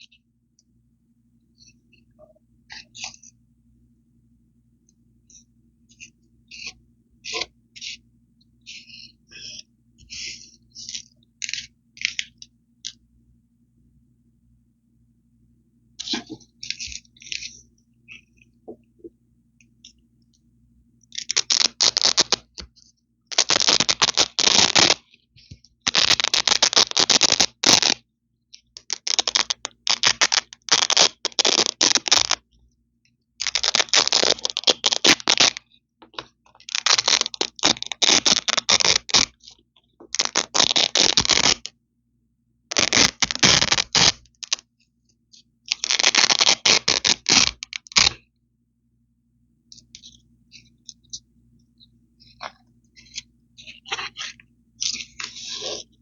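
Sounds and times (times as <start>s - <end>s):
velcro ripping: 21.2s - 22.5s, 23.3s - 25.0s, 25.9s - 28.0s, 28.9s - 32.4s, 33.4s - 35.6s, 36.7s - 39.4s, 40.1s - 41.7s, 42.7s - 44.6s, 45.7s - 48.2s, 52.3s - 55.9s.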